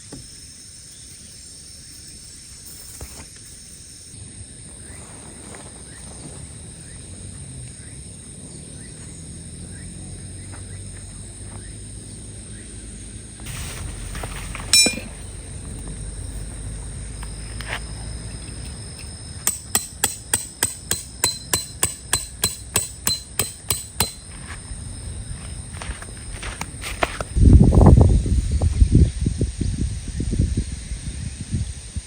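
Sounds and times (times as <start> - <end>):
hammer blows on metal: 14.7 - 15.2, 19.4 - 24.3
ringing metallic clink: 14.7 - 15.3, 19.4 - 24.3.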